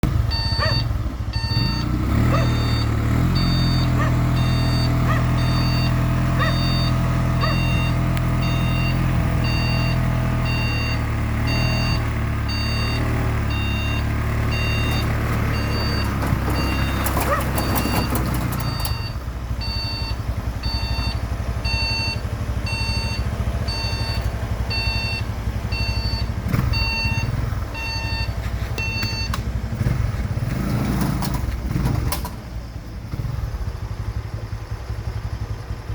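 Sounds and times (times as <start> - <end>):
cargo carrier engine running: 0.0 - 35.9
warning beeper: 0.3 - 25.2
short clatter: 14.8 - 19.1.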